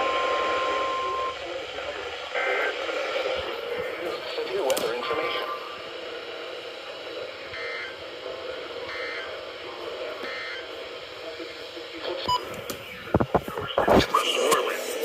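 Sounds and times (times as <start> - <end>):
brief tone: 0.0 - 1.4
short data tone bursts: 0.0 - 1.4
radio static hiss: 0.0 - 15.0.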